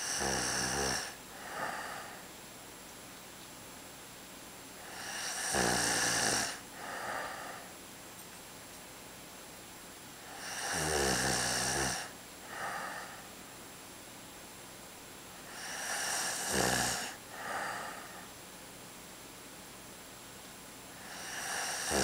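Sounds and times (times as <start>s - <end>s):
man snoring: 0.0s - 2.2s, 4.8s - 7.7s, 10.3s - 13.2s, 15.5s - 18.2s, 21.0s - 22.0s
soft breath out: 1.3s - 2.3s, 17.3s - 18.4s.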